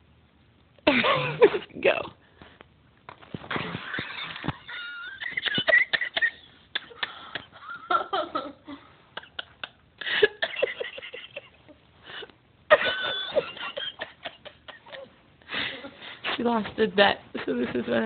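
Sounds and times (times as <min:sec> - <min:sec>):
people laughing and giggling: 0:03.6 - 0:16.0.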